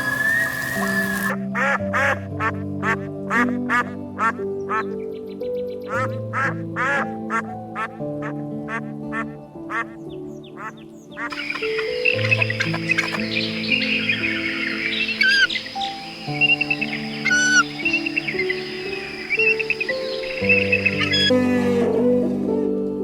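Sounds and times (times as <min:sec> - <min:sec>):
slow background music: 0:00.0 - 0:23.0
duck quacking: 0:01.6 - 0:04.9, 0:06.3 - 0:10.0, 0:10.6 - 0:21.3.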